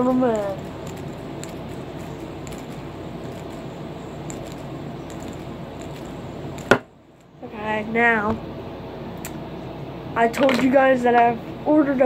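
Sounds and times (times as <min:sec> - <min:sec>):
fidget spinner whirring: 0:00.0 - 0:08.3.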